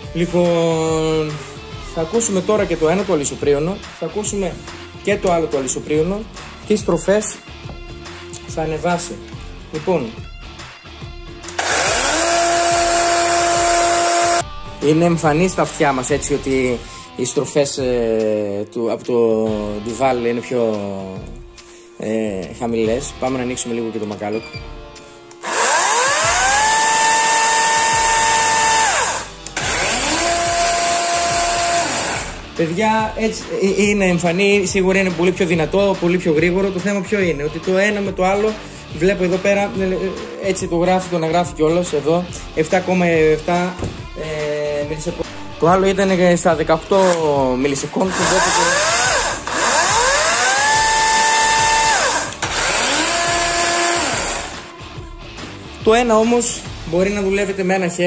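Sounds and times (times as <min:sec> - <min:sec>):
battery chainsaw motor whine: 0:11.5 - 0:14.4, 0:25.4 - 0:32.5, 0:48.1 - 0:54.6.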